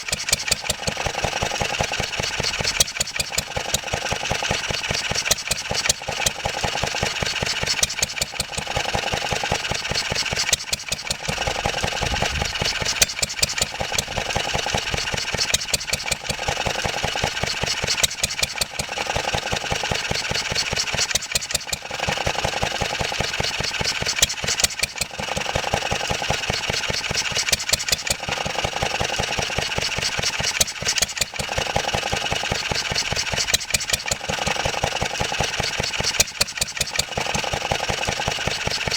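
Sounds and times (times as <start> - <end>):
stationary engine idling: 0.0 - 38.9.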